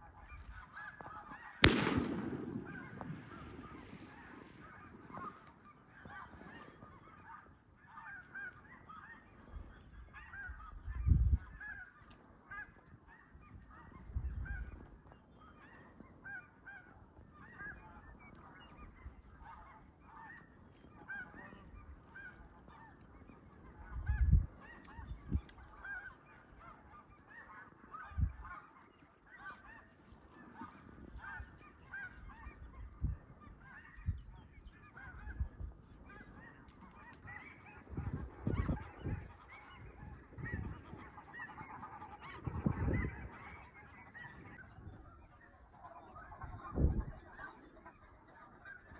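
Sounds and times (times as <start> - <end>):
geese honking: 0.0 - 48.9.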